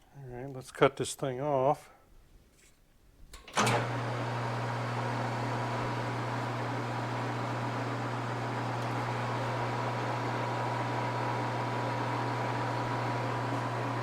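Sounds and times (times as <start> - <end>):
motor humming: 3.4 - 14.0.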